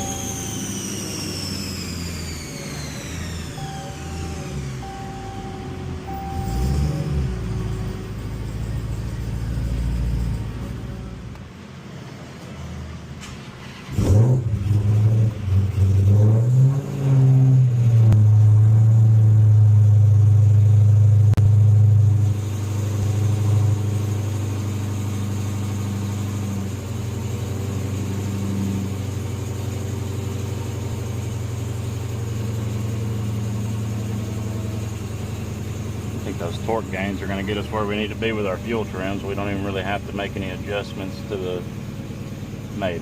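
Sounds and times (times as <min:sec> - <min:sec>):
supercharged engine revving: 0:00.0 - 0:11.3, 0:13.3 - 0:20.6, 0:21.4 - 0:43.0.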